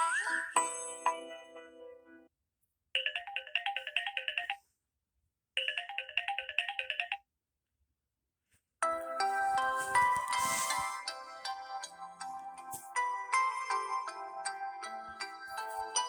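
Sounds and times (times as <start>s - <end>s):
electronic ringtone melody: 9.0s - 16.0s.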